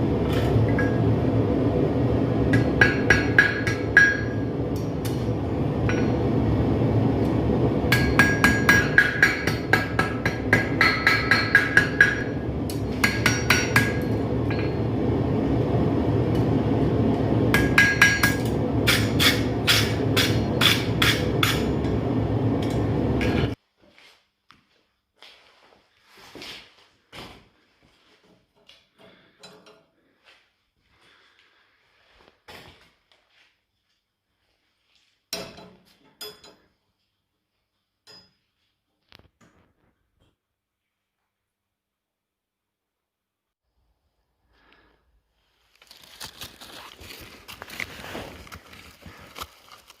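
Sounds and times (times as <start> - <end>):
steady low rumble: 0.0 - 23.6
hammer ringing on anvil: 2.5 - 5.2, 5.8 - 6.2, 7.9 - 14.9, 17.5 - 21.9.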